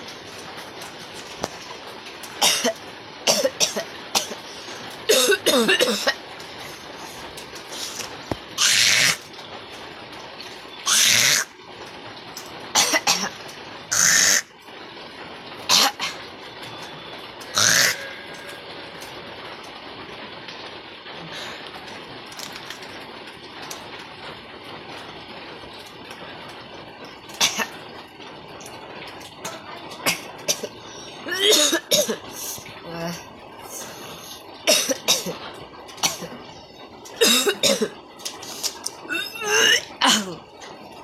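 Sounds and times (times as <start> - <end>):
heavy rain hiss: 0.0 - 41.0
person coughing and retching: 2.4 - 4.5, 5.1 - 6.3, 12.8 - 13.4, 15.7 - 16.2, 27.4 - 27.8, 30.0 - 32.3, 34.7 - 36.4, 37.2 - 38.0, 38.6 - 40.4.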